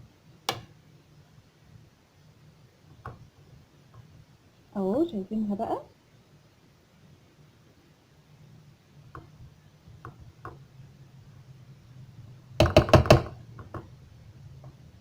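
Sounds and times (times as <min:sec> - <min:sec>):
loud knocks: 0:12.6 - 0:13.4.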